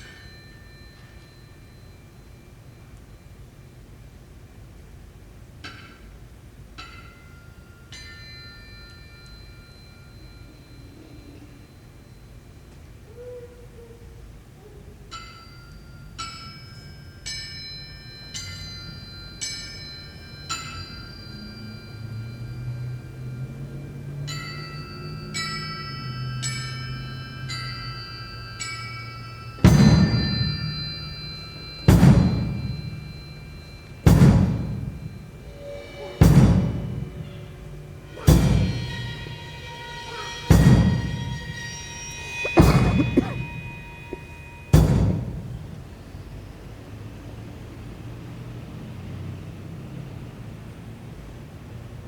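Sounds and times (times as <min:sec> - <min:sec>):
held high ringing tones: 0:00.0 - 0:03.9.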